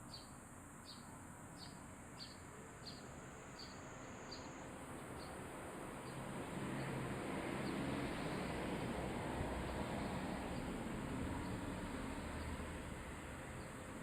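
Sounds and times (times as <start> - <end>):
cicadas droning: 0.0 - 14.0
sparrow chirping: 0.1 - 5.4.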